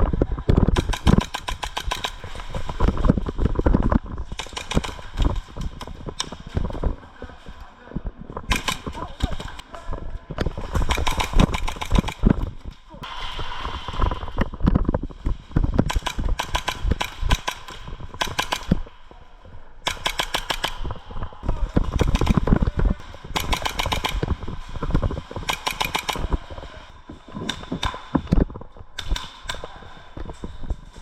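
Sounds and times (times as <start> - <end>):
airsoft guns firing bursts: 0.6 - 7.0, 8.5 - 9.7, 10.4 - 12.8, 15.8 - 19.0, 19.8 - 28.3.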